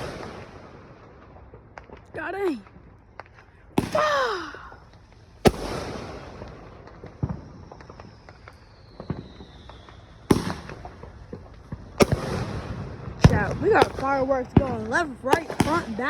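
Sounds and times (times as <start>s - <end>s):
faint firework pops: 0.0s - 4.1s, 4.8s - 16.0s
firework bangs with rumbling tail: 0.0s - 4.1s, 4.8s - 16.0s.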